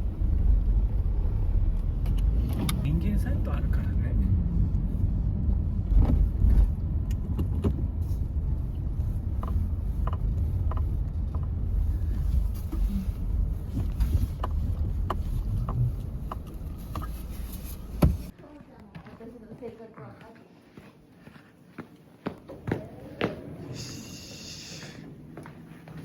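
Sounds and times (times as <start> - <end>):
car road and engine rumble: 0.0 - 18.4.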